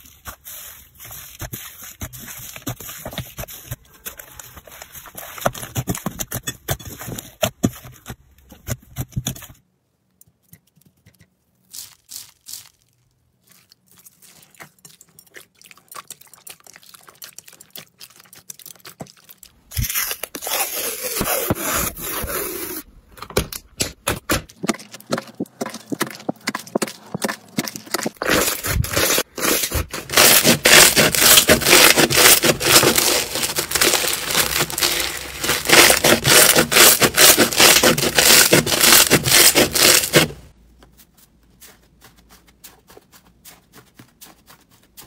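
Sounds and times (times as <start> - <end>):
close-up scraping and crackling: 24.5 - 40.5.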